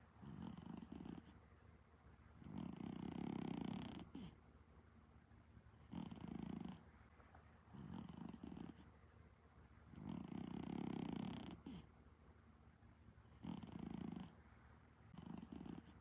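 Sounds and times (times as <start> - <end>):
cat snoring: 0.2 - 1.4, 2.4 - 4.4, 5.8 - 6.8, 7.7 - 8.9, 10.0 - 11.9, 13.4 - 14.4, 15.1 - 16.0.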